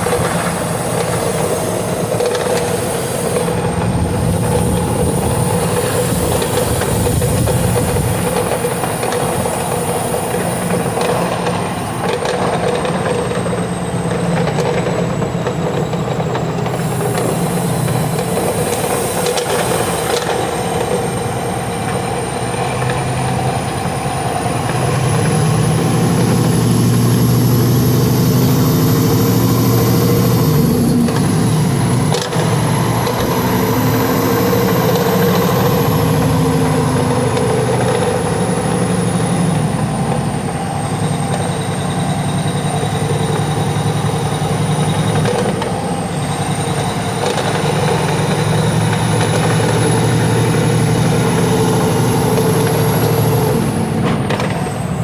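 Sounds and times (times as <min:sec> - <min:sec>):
diesel engine running: 0:00.0 - 0:55.0
thin high whistle: 0:13.2 - 0:53.8.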